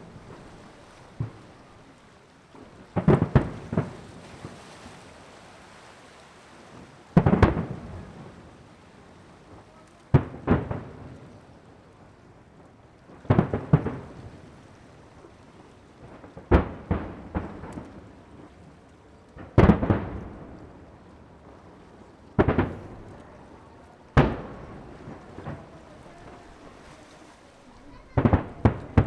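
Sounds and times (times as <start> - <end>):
fireworks booming: 0.0 - 1.6, 2.6 - 4.8, 6.7 - 8.7, 9.5 - 11.9, 12.5 - 29.0
quick firework bangs: 22.4 - 23.3, 24.2 - 29.0.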